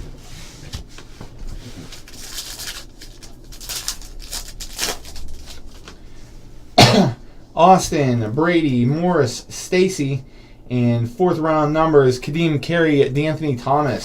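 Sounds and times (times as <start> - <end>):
card wrappers crinkling: 1.8 - 6.0.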